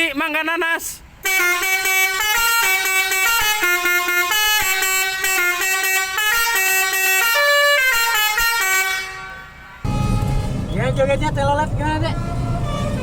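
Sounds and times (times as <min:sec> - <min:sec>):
bus musical horn playing a tune: 0:01.2 - 0:10.7, 0:12.0 - 0:13.0.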